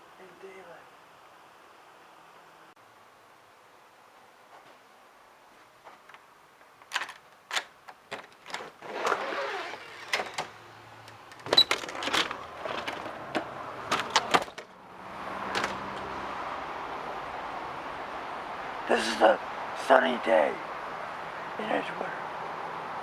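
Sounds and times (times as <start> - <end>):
outdoor background noise: 0.0 - 23.0
rustling: 4.5 - 14.8.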